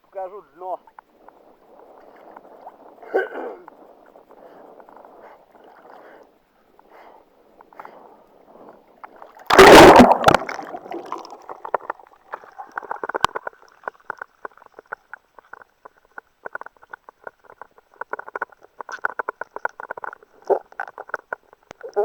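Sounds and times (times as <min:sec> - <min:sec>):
small splashes and sloshing: 0:09.2 - 0:14.8
loud water splash: 0:09.5 - 0:11.7.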